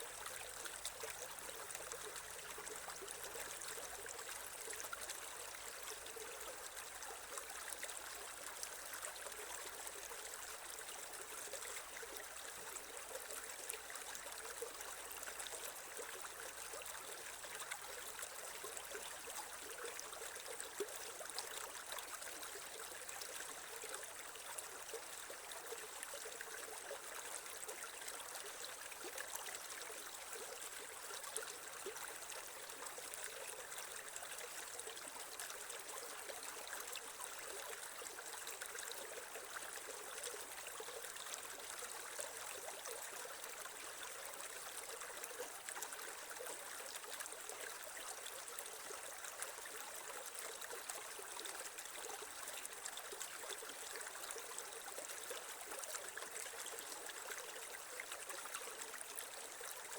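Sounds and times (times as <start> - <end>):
creek water babbling over stones: 0.0 - 59.9.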